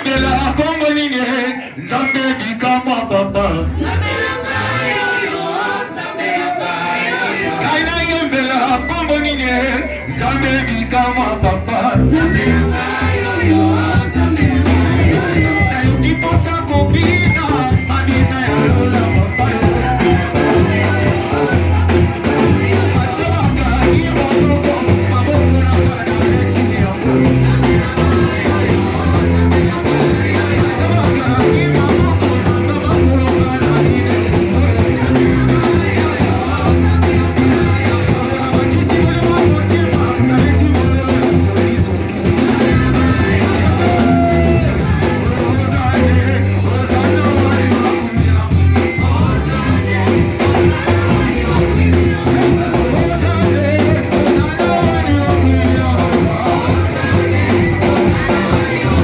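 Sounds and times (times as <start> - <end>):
drum kit: 0.0 - 0.7, 7.4 - 59.0
praise band playing worship song: 0.0 - 59.0
voices singing along: 0.0 - 59.0.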